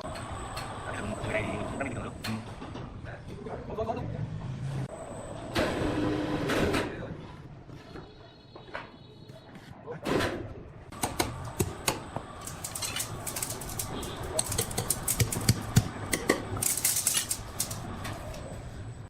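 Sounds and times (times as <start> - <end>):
rapid irregular clicking: 11.1 - 18.0.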